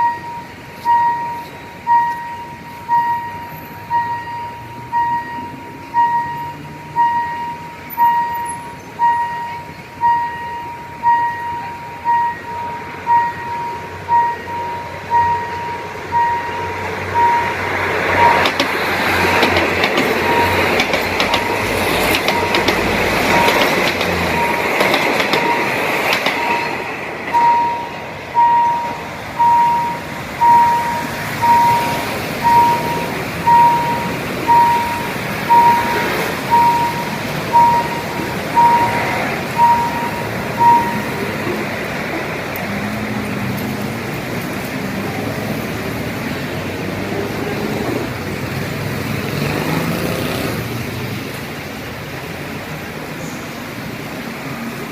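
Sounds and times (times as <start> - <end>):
level crossing signal ringing: 0.0 - 42.7
train wheels clacking: 0.0 - 50.7
train rumbling past: 0.0 - 54.9.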